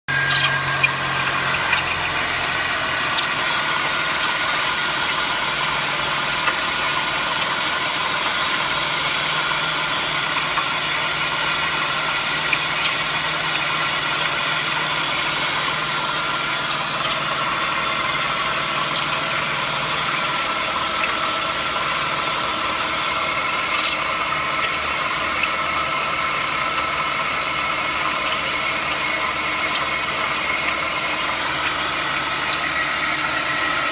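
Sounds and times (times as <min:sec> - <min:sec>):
engine idling: 0:00.1 - 0:33.9.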